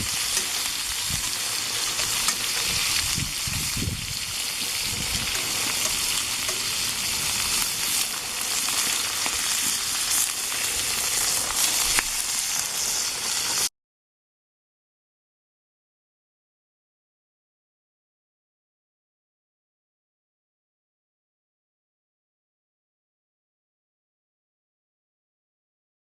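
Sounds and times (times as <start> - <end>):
food sizzling in a pan: 0.0 - 13.7.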